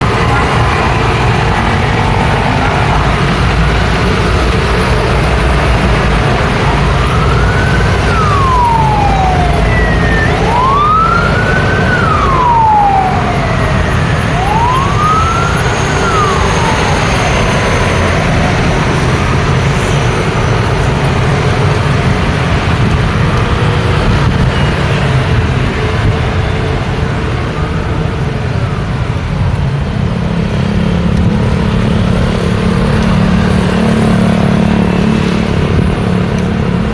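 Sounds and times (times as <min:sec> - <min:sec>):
siren wailing: 0:00.0 - 0:21.0
road traffic: 0:00.0 - 0:36.9.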